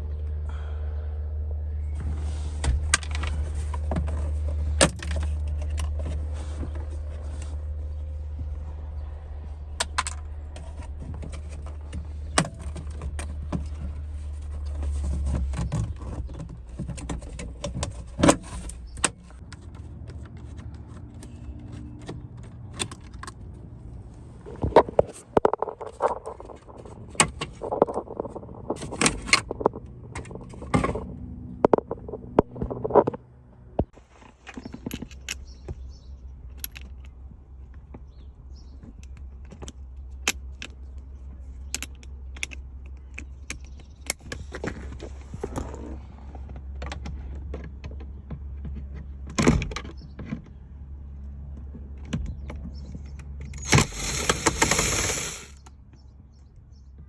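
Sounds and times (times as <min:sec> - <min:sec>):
steady low hum: 0:00.0 - 0:15.4
tools clicking and rattling: 0:53.2 - 0:55.6.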